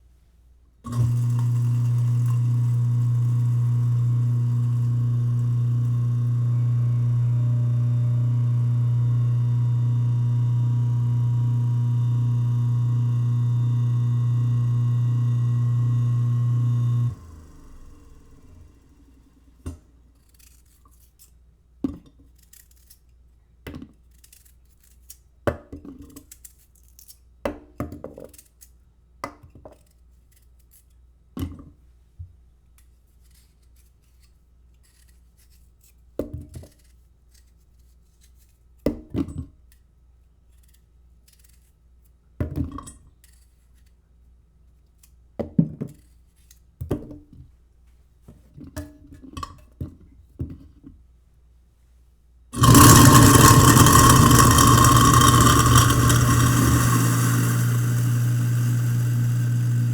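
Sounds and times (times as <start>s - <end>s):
garbage disposal low hum: 0.9s - 19.6s, 52.6s - 59.9s.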